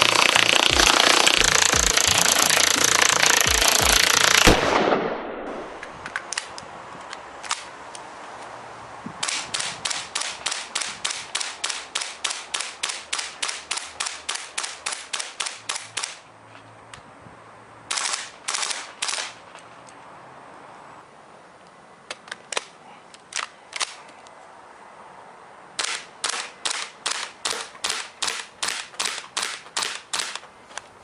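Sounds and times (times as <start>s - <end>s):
airsoft gun shots: 0.0s - 6.2s, 25.8s - 30.4s
loud dense noise: 0.0s - 6.5s.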